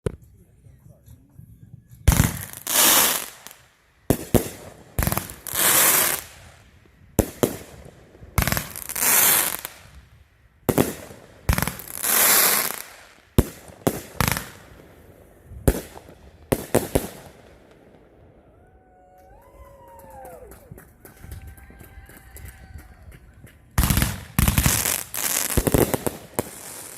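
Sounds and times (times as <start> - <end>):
fireworks bangs: 2.0 - 10.0, 10.6 - 18.2, 23.8 - 26.9
fireworks hissing crackle: 2.1 - 10.1, 10.7 - 14.8, 23.8 - 26.9.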